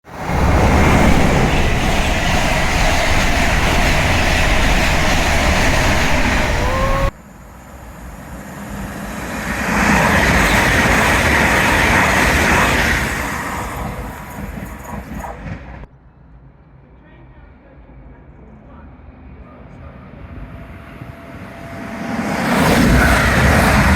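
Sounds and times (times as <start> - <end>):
train passing at speed: 0.0 - 15.9, 18.7 - 23.9
brief rising tone: 0.2 - 7.1.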